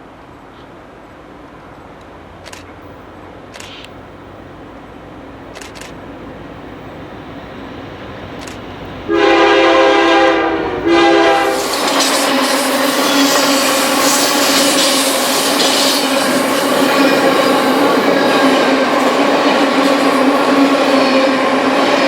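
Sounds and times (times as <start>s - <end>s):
train rumbling past: 0.0s - 22.0s
diesel locomotive horn blasts: 9.1s - 15.1s.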